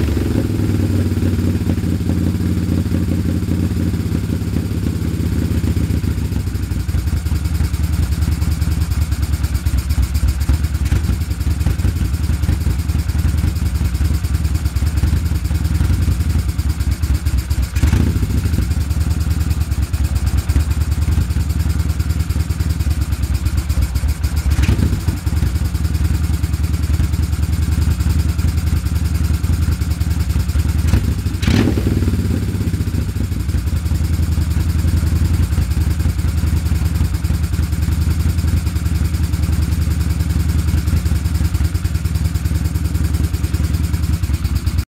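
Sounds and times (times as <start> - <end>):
motorcycle engine idling roughly: 0.0 - 44.9.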